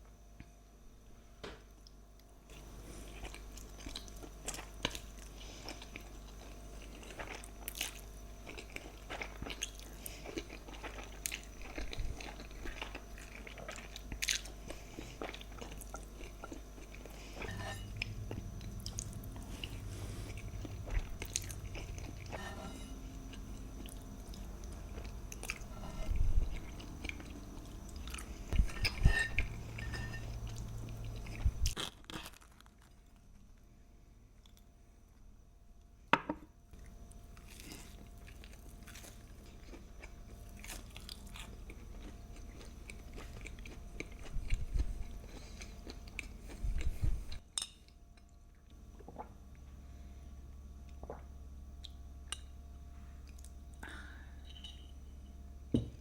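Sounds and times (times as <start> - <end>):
steady low hum: 0.0 - 32.2, 32.9 - 56.0
person chewing: 2.6 - 32.7, 37.4 - 47.4
crunchy bites: 31.3 - 33.2.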